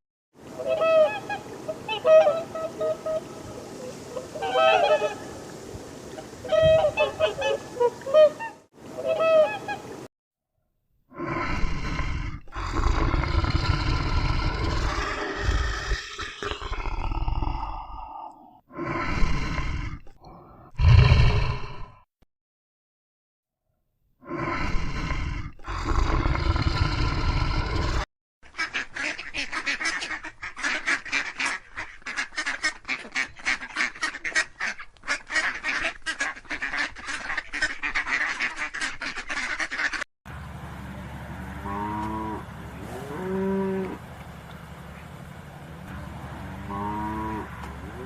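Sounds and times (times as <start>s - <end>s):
waterfowl quacking and honking: 0.5s - 5.3s, 6.1s - 10.1s, 28.5s - 40.0s
loud noisy animal sound: 11.2s - 18.2s
low drawn-out animal calls: 11.2s - 22.0s, 41.6s - 44.0s, 45.9s - 48.0s.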